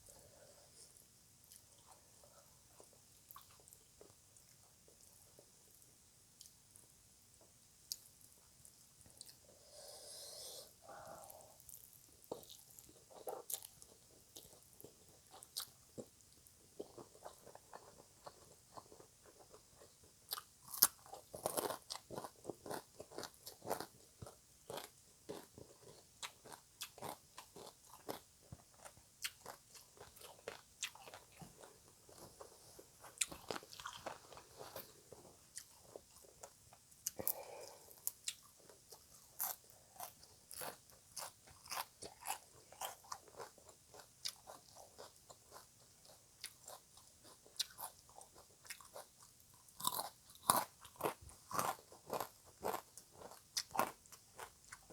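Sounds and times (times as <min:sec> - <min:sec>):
crisp crunching chewing: 0:16.8 - 0:54.9.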